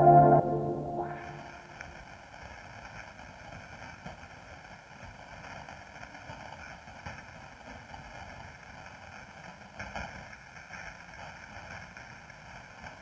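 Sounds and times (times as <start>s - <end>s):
faint held tones: 0.0s - 1.6s
ambient electronic music: 0.0s - 1.7s.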